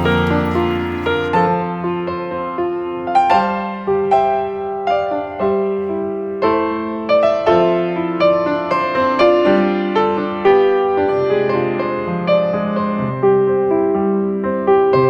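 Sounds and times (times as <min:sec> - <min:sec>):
slow piano melody: 0:00.0 - 0:01.3.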